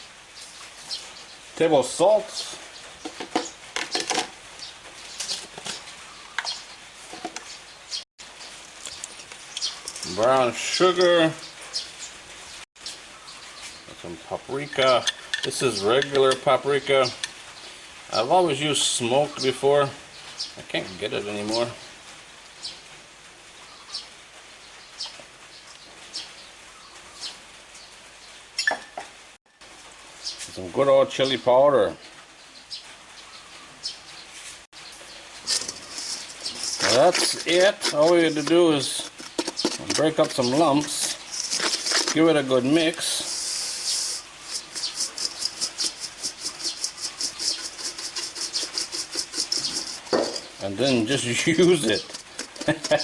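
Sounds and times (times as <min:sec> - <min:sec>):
bird chirping: 0:00.3 - 0:01.5, 0:04.6 - 0:12.2, 0:32.4 - 0:53.0
spice rub stirred in bowl: 0:35.4 - 0:53.0.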